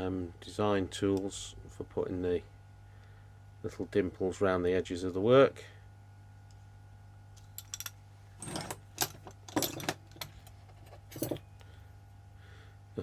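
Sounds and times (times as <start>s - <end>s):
metal hand tools clicking and clinking: 7.6s - 10.4s.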